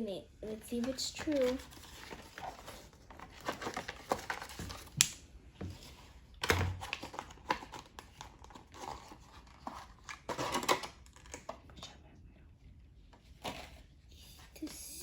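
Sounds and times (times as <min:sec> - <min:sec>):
packaging crinkling and tearing: 0:00.7 - 0:05.2, 0:06.4 - 0:11.7.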